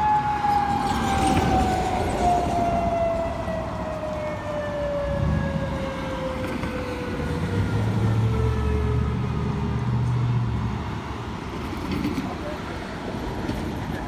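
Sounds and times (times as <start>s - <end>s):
warning siren winding down: 0.0s - 9.8s.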